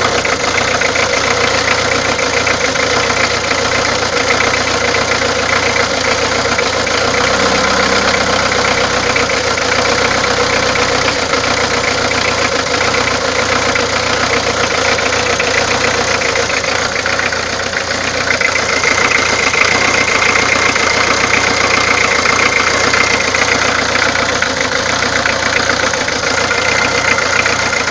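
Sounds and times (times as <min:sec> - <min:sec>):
diesel engine idling with knocking: 0:00.0 - 0:27.9.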